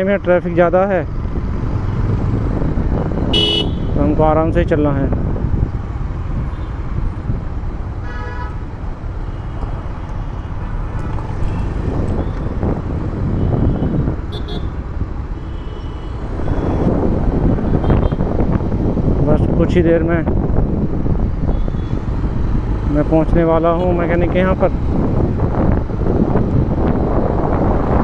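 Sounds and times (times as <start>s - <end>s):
motorcycle rumble: 0.0s - 28.0s
vehicle horns honking: 3.3s - 4.0s, 8.0s - 8.6s, 9.2s - 12.4s, 13.3s - 14.8s, 15.4s - 16.9s, 17.7s - 18.3s, 21.5s - 22.0s.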